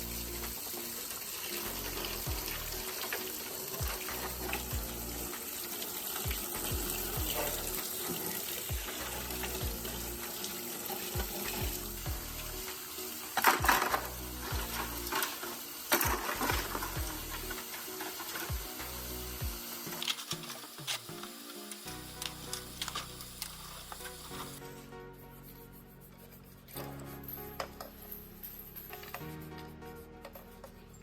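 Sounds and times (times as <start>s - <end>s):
tap water running and splashing: 0.0s - 24.6s
background music with low beat: 1.5s - 20.0s, 21.9s - 31.0s.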